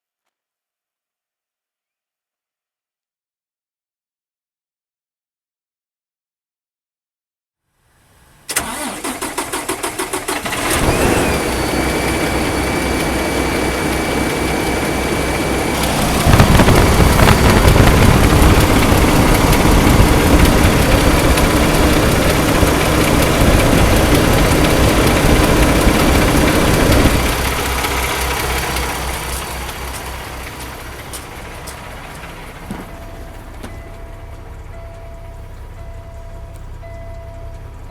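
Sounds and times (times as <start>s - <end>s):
diesel engine cranking and running: 8.4s - 37.9s.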